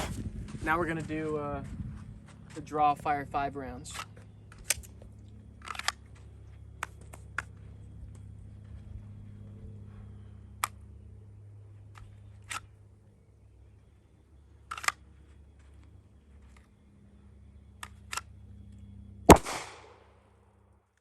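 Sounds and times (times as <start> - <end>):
handgun shot with echo: 19.3 - 20.1.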